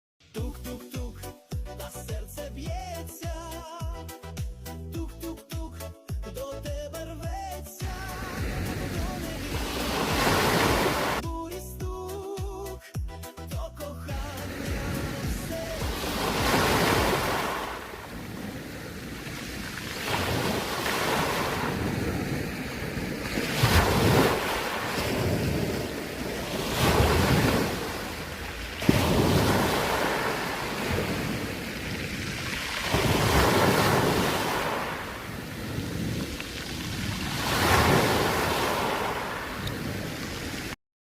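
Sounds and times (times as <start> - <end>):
waves breaking on shore: 7.8 - 11.2, 14.3 - 40.8
wind on microphone: 8.2 - 11.2, 14.5 - 40.8.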